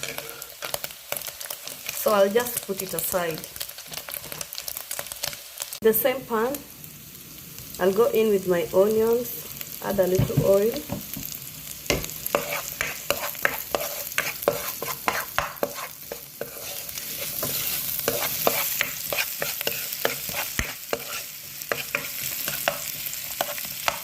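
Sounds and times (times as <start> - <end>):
onions sizzling in a pan: 0.0 - 24.0
utensil scraping and knocking pan: 11.9 - 22.8.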